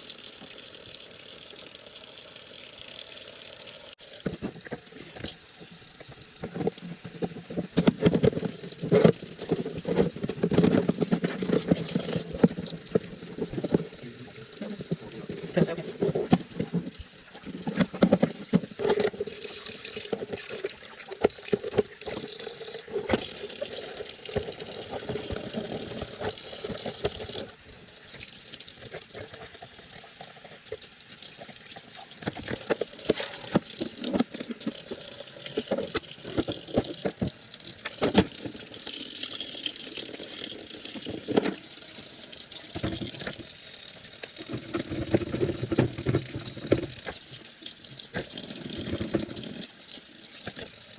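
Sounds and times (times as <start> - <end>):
tap water running into sink: 0.0 - 50.9
knocks and splashes of rinsing: 4.0 - 27.6, 30.5 - 38.7, 40.8 - 43.6, 44.3 - 47.4.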